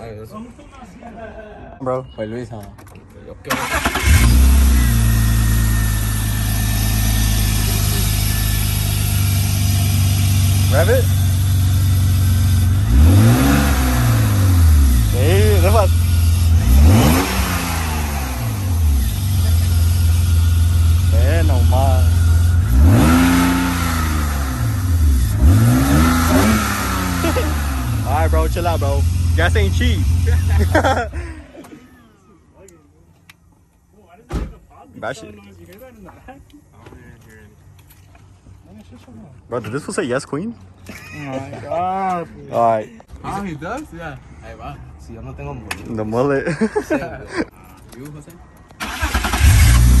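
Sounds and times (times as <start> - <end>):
car engine idling: 3.5 - 31.2, 48.8 - 50.0.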